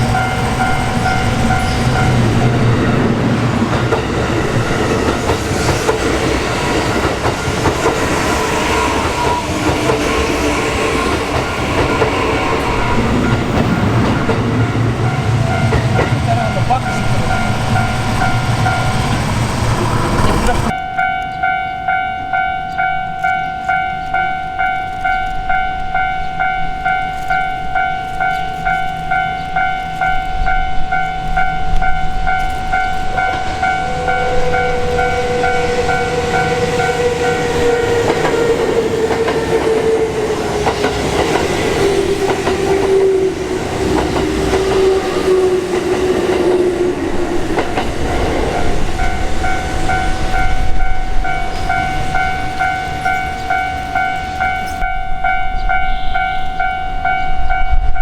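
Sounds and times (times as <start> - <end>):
train motor whine: 0.0 - 20.7, 31.3 - 54.9
electric train rumble: 0.0 - 58.0
level crossing bell ringing: 20.7 - 37.1, 49.0 - 57.8.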